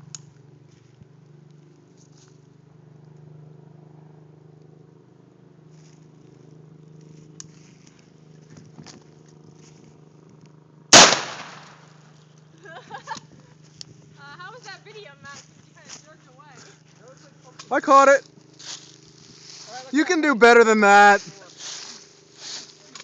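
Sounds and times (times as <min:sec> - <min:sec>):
low hum: 0:00.0 - 0:19.7
shotgun blast: 0:10.9 - 0:12.0.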